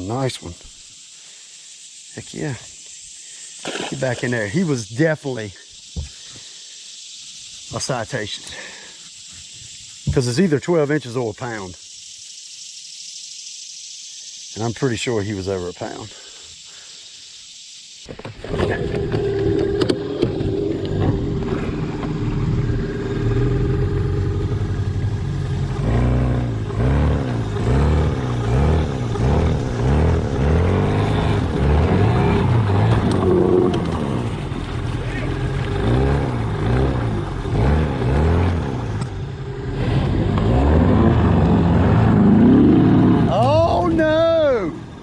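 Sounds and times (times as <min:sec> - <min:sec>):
outboard motor revving: 0:18.2 - 0:45.0.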